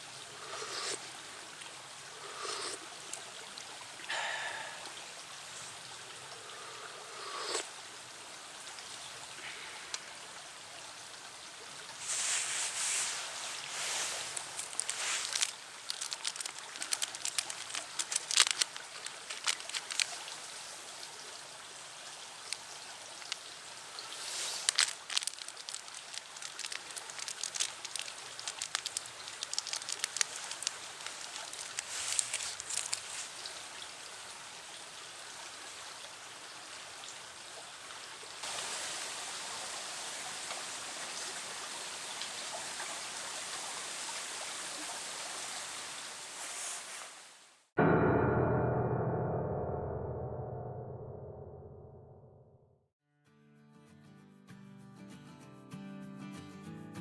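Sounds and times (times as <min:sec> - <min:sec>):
pellet fire hissing: 0:00.2 - 0:03.0, 0:12.0 - 0:20.2, 0:24.0 - 0:33.5
fire crackling and popping: 0:13.7 - 0:20.3, 0:22.4 - 0:33.5.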